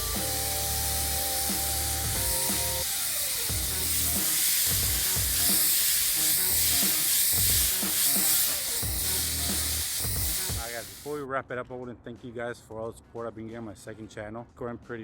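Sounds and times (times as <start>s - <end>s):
music with deep bass beat: 0.0s - 11.2s
water spray hissing: 0.0s - 11.2s.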